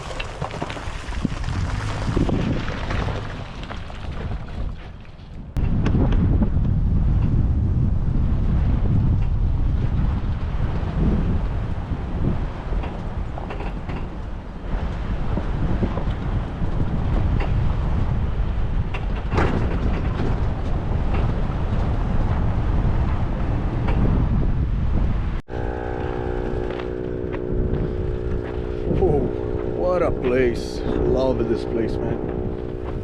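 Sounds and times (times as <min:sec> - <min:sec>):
wind buffeting microphone: 0:00.0 - 0:33.0
knocks and rattles: 0:12.5 - 0:24.3
vehicle engine drone: 0:25.5 - 0:33.0.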